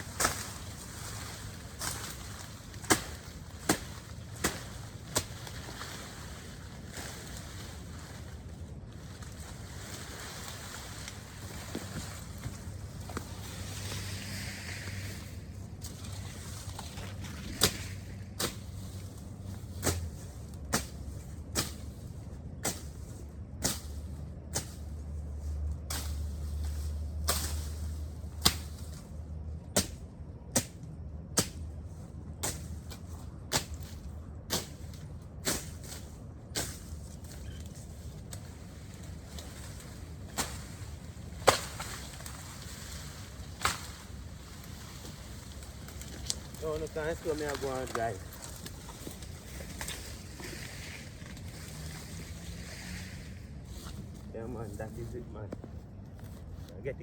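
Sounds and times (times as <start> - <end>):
hand tool chopping vegetation: 0.0 - 22.0, 22.6 - 24.9, 25.8 - 29.1, 29.7 - 31.7, 32.4 - 56.4.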